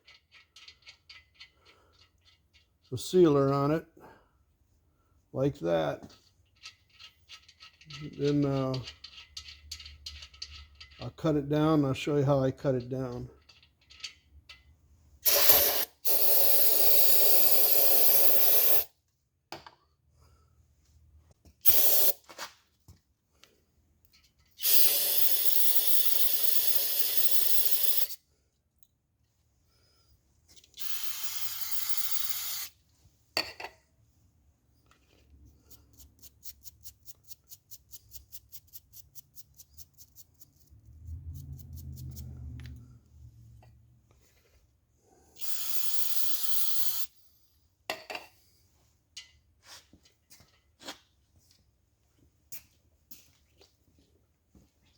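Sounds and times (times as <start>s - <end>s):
compressed air hissing: 45.4s - 47.1s.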